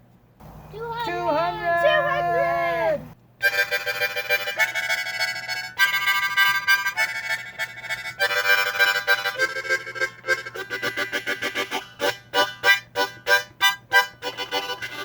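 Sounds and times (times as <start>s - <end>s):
instrumental background music: 3.4s - 15.0s.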